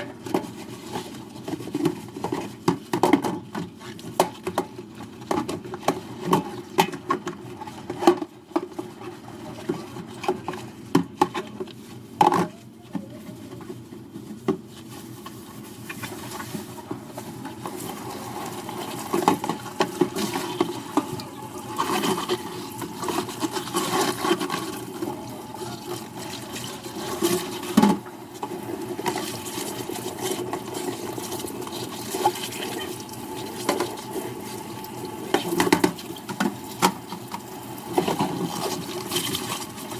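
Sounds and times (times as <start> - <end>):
tap water running: 15.2 - 39.9.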